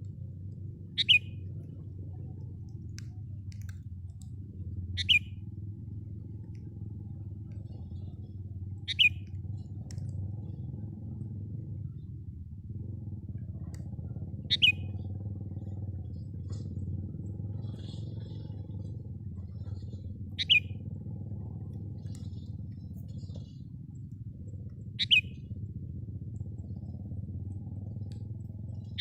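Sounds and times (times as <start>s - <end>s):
steady low rumble: 0.0s - 29.0s
bird's sharp call: 1.0s - 1.4s, 5.0s - 5.4s, 20.4s - 20.8s
high bird chirps: 1.0s - 1.4s, 5.0s - 5.4s, 8.9s - 9.3s, 14.5s - 15.0s, 19.6s - 20.9s, 25.0s - 25.4s.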